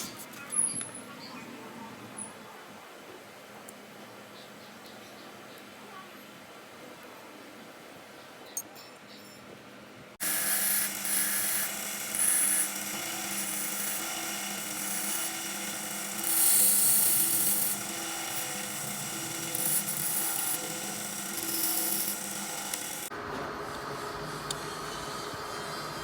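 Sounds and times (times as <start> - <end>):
power tool whining: 10.2 - 23.1
tool grinding metal hiss: 10.2 - 23.1.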